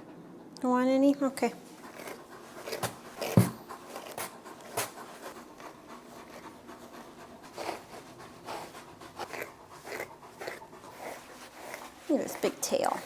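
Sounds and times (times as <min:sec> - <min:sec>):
thump: 0:03.3 - 0:03.6
brush strokes on dog coat: 0:07.5 - 0:13.0.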